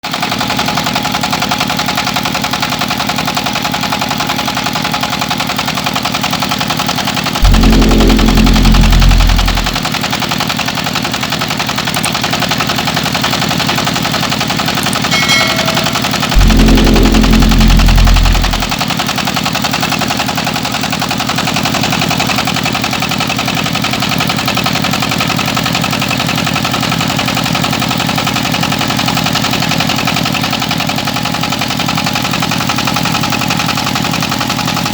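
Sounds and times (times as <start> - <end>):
loud low rumble: 7.4 - 10.0, 15.2 - 18.9.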